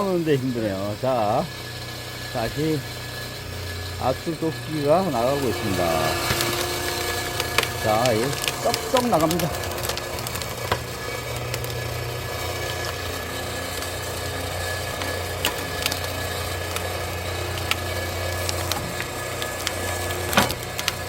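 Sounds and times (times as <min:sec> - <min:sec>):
hydraulic pump humming: 0:00.0 - 0:21.0
log cracking as it splits: 0:05.1 - 0:21.0.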